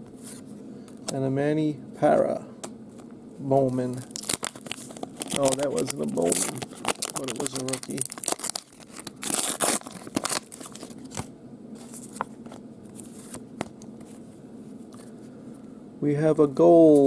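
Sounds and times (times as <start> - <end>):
wrapper tearing and crinkling: 4.0 - 11.3.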